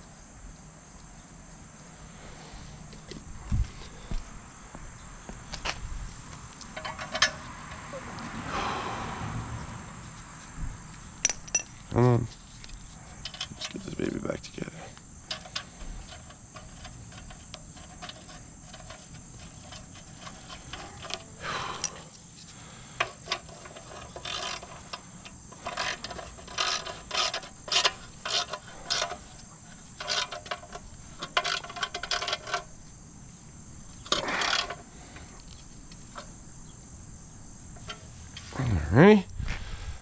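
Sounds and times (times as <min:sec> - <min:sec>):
tools and metal parts clinking: 0:06.7 - 0:07.5, 0:11.2 - 0:11.8, 0:13.2 - 0:14.1, 0:15.2 - 0:22.0, 0:23.0 - 0:32.7, 0:34.0 - 0:34.9.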